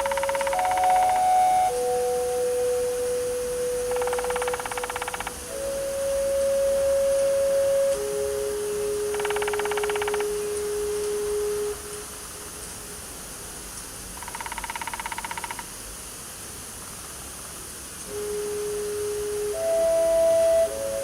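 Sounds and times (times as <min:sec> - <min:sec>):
animal buzzing trill: 0:00.0 - 0:01.4, 0:03.9 - 0:05.5
ambient hiss: 0:00.0 - 0:21.0.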